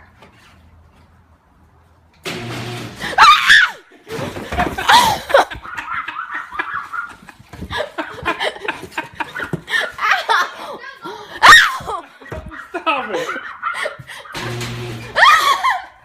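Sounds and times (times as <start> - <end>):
people shrieking: 3.0 - 3.8, 11.4 - 12.0, 15.1 - 15.9
people laughing: 4.4 - 14.4.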